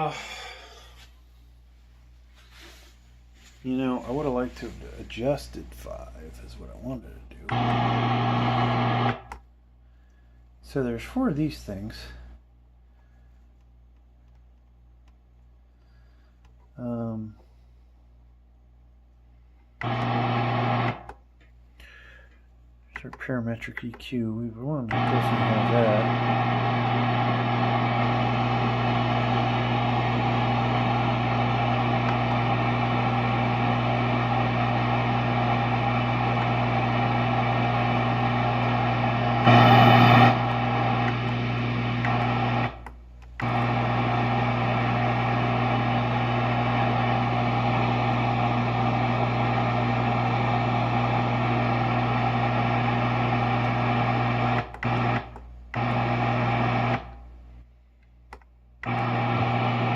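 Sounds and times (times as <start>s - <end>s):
amplifier hum and hiss: 0.9s - 9.5s, 18.7s - 21.7s, 23.4s - 59.9s.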